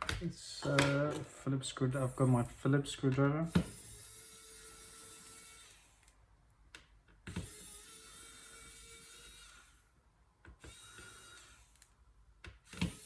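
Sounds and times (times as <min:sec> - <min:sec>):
electric screwdriver whirring: 0:03.5 - 0:06.2, 0:07.3 - 0:09.8, 0:10.6 - 0:11.9, 0:12.6 - 0:13.0.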